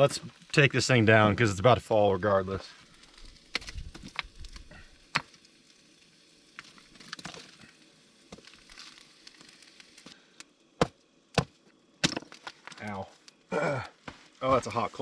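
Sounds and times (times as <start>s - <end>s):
faint fire crackling: 0.0s - 15.0s.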